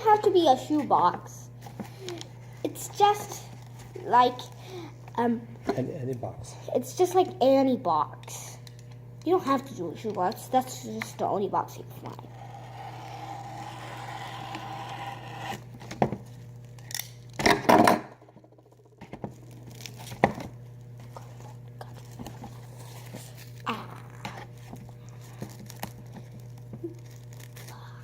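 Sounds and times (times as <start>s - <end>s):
plastic wrap crinkling: 19.4s - 27.8s.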